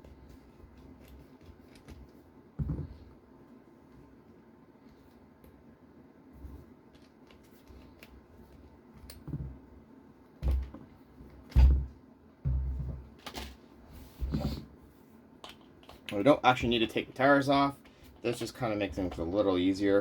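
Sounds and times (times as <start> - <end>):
dull knocks and thumps: 1.9 - 3.2, 9.2 - 9.7, 10.4 - 13.2.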